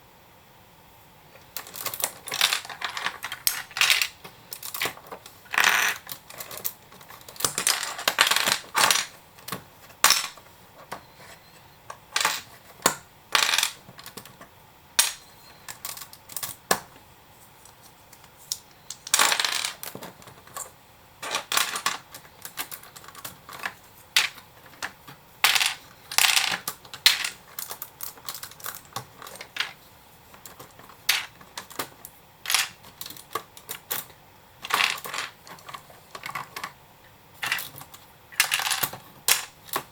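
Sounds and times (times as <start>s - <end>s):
plastic bricks clicking and clattering: 1.6s - 10.4s, 12.2s - 14.4s, 18.9s - 29.8s, 30.4s - 36.8s, 37.4s - 39.9s.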